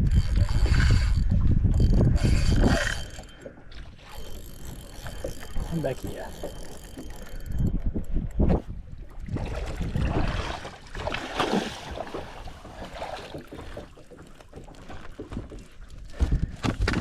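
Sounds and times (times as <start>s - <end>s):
water splashing against boat: 0.0s - 17.0s.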